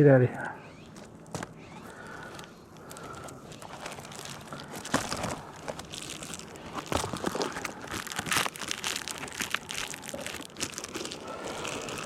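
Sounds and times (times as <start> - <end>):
crinkly material rustling: 0.6 - 12.0.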